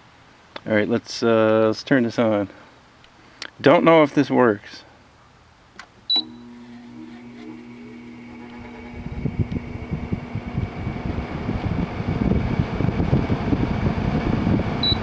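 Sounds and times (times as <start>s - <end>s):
air conditioner fan rushing: 5.9s - 15.0s.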